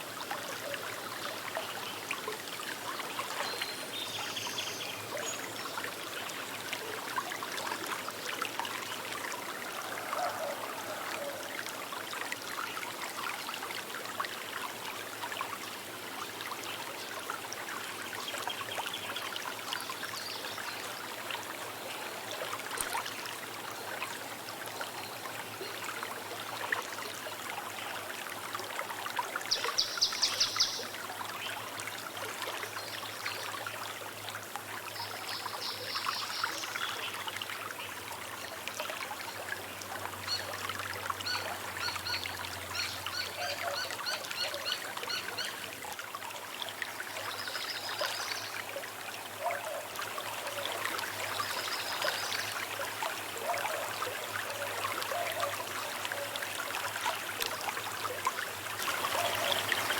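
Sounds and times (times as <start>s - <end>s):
river babbling over stones: 37.3s - 59.9s.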